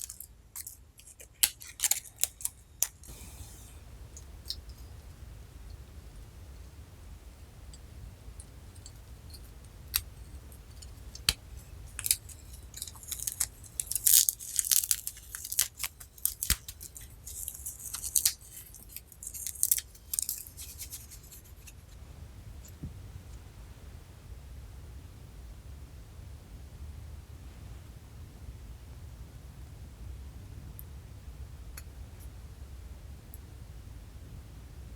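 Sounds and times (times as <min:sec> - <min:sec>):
crisp crackling and clicks: 0:00.0 - 0:03.3, 0:10.8 - 0:21.9.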